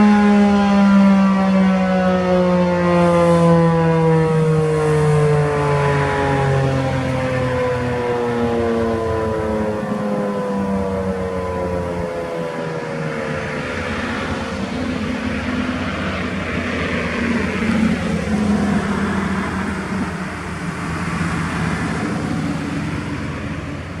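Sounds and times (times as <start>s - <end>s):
warning siren winding down: 0.0s - 24.0s
low hum: 8.3s - 24.0s
steady rushing noise: 11.4s - 24.0s.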